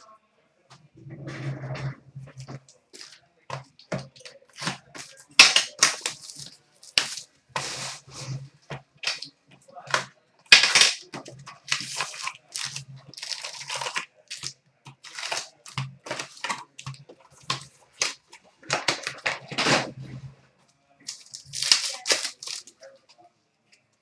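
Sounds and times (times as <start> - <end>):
wrappers crinkling: 3.9 - 8.4, 9.9 - 19.8, 21.1 - 22.8
card packs being torn open: 4.0 - 8.0, 9.9 - 19.8, 21.1 - 22.8.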